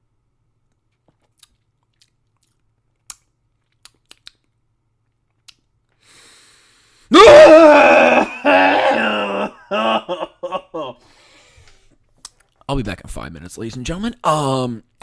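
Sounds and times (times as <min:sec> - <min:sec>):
wet mouth clicks and lip smacks: 0:00.9 - 0:05.7, 0:12.2 - 0:12.6.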